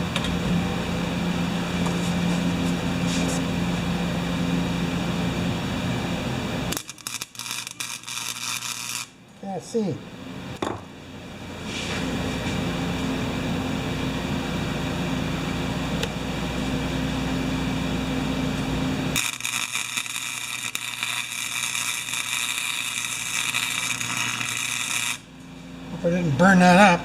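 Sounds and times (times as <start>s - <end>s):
welder humming and crackling hiss: 0.0s - 3.7s, 6.2s - 10.8s, 18.5s - 26.2s.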